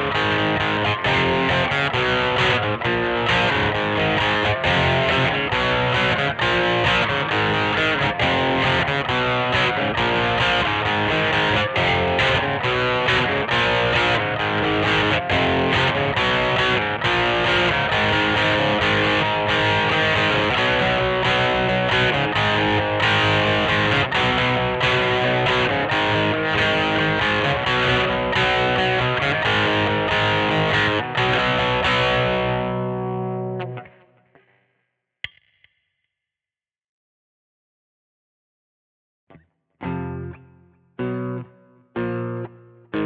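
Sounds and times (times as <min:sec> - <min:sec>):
distorted electric guitar chords: 0:00.0 - 0:34.1, 0:39.8 - 0:43.0.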